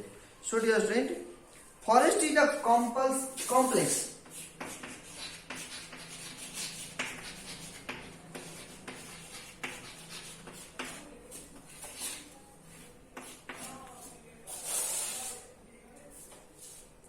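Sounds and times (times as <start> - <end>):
pen scratching while writing: 4.2 - 12.3.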